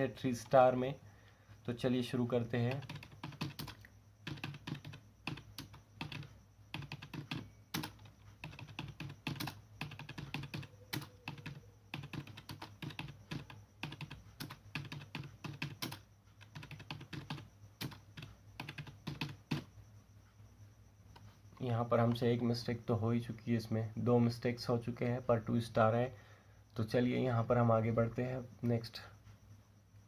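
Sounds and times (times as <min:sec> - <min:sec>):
computer keyboard typing: 0:00.0 - 0:00.9, 0:02.2 - 0:19.7.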